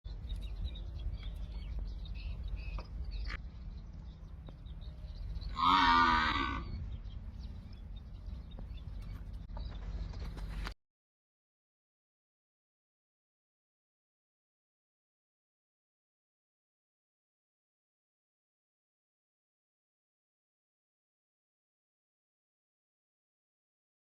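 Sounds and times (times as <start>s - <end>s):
low background rumble: 0.1s - 10.8s
cow mooing: 5.5s - 6.8s.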